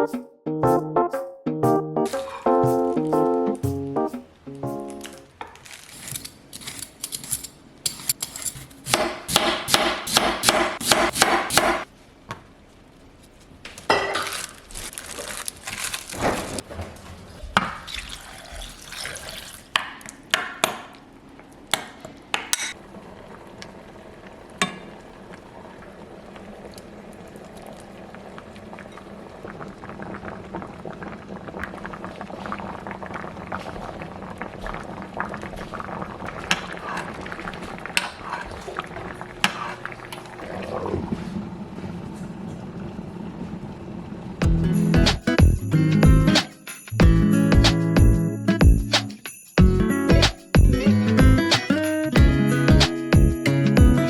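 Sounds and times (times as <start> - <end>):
liquid pouring: 17.2 - 19.8.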